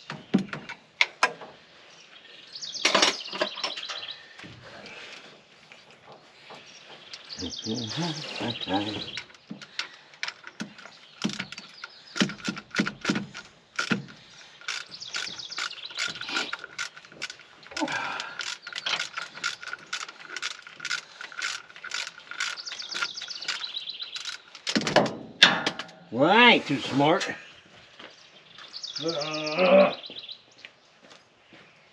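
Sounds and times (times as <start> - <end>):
birds chirping faintly: 0.0 - 31.9
ratchet wrench clicking: 9.2 - 24.8.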